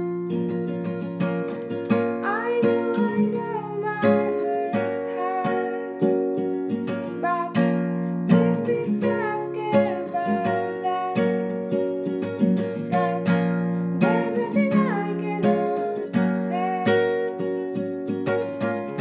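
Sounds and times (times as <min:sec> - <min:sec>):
acoustic guitar strumming: 0:00.0 - 0:19.0
person singing: 0:02.2 - 0:05.9, 0:07.1 - 0:11.4, 0:12.8 - 0:17.3.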